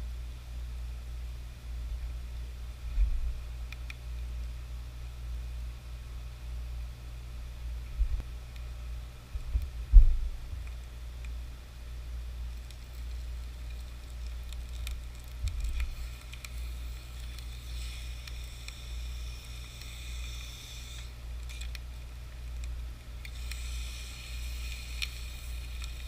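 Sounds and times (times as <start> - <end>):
steady low rumble: 0.0 - 26.0
circuit boards sizzling in molten metal: 12.4 - 26.0.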